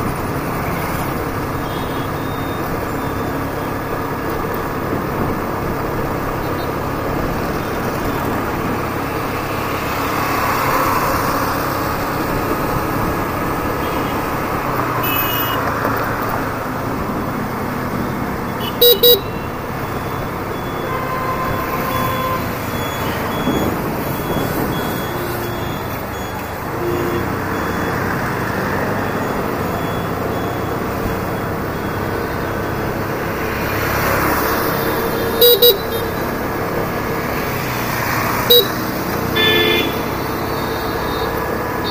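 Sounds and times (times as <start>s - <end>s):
traffic: 0.0s - 41.9s
wind and road noise: 0.0s - 41.9s
horn tooting: 15.0s - 15.6s, 18.5s - 19.6s, 20.5s - 26.0s, 26.7s - 27.4s, 34.4s - 36.4s, 38.4s - 41.9s.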